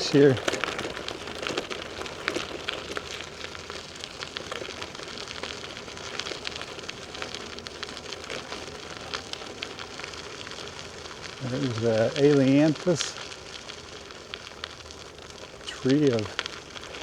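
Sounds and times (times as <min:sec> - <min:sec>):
bicycle tyres rolling on dirt trail: 0:00.0 - 0:17.0.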